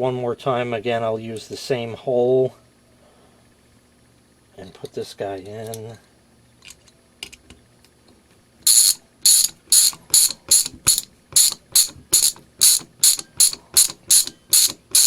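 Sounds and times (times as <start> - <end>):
ratchet screwdriver clicking: 8.6 - 15.0
screwdriver handling clicks: 8.7 - 15.0.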